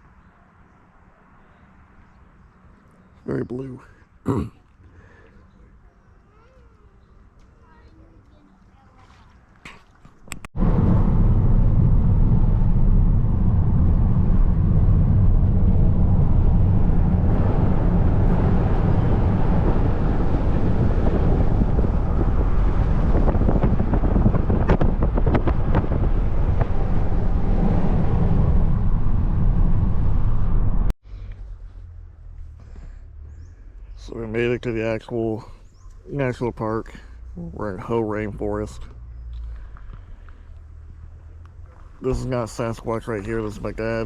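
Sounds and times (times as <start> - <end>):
wind and road noise in car: 10.2 - 44.0.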